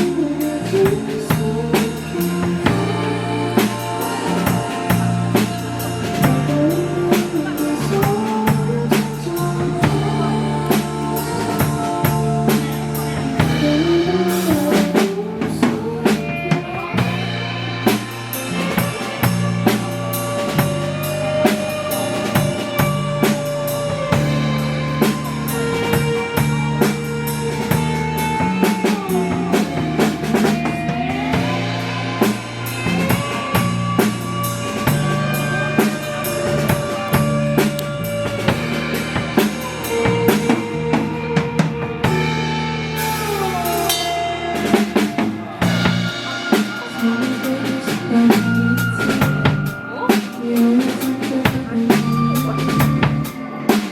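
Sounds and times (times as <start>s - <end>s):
drum kit beat: 0.0s - 53.9s
sustained bass notes: 0.0s - 53.9s.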